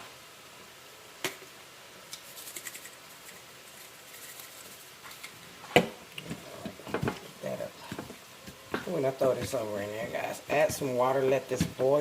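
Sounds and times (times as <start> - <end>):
spice shaker rattling: 2.1 - 5.4.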